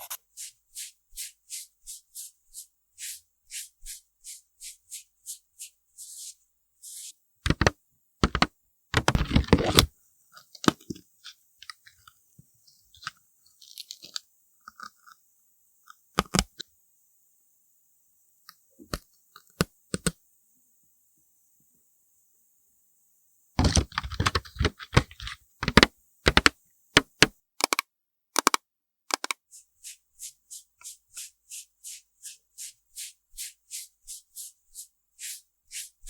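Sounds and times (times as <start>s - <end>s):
makeup brush swipes: 0.3s - 7.1s, 29.5s - 36.0s
taps and clicks of tools: 7.5s - 9.3s, 23.6s - 29.4s.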